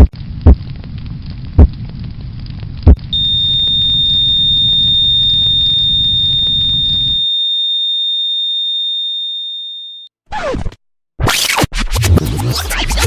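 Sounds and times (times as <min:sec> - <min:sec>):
low steady hum: 0:02.8 - 0:07.3
smoke alarm high-pitched tone: 0:03.2 - 0:10.1.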